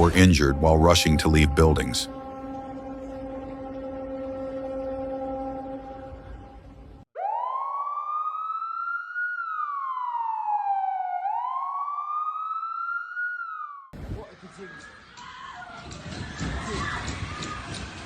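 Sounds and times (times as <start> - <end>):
droning multi-pitch tone: 0.0 - 13.5
siren wailing: 0.0 - 14.0.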